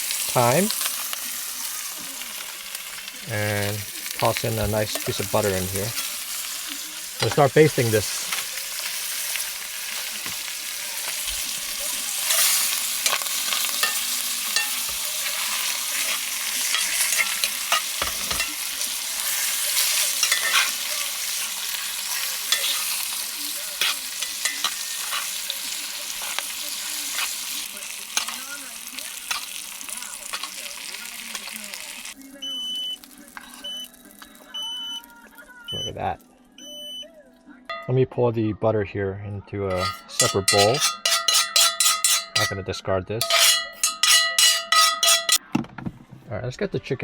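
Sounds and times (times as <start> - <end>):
butter sizzling in a pan: 0.0 - 35.7, 39.7 - 42.6, 43.2 - 45.4
utensil scraping a pan: 3.0 - 28.5, 39.7 - 45.4.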